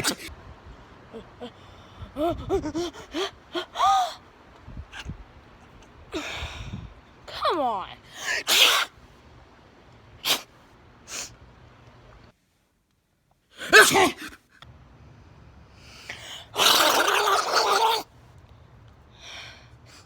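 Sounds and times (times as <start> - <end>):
person sneezing: 0.0 - 0.3, 8.2 - 8.9, 13.6 - 14.4.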